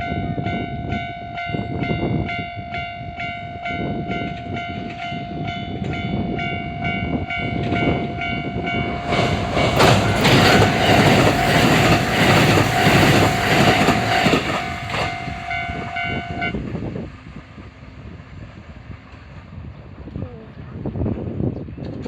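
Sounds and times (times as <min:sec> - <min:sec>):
level crossing warning bell: 0:00.0 - 0:16.6
electric train passing: 0:00.0 - 0:20.1
wheels clacking over rail joints: 0:07.4 - 0:17.7.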